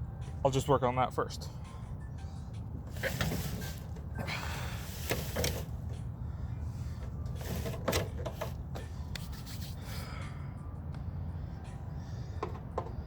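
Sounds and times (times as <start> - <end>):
metal panels scraping: 2.9 - 3.9, 4.9 - 5.7.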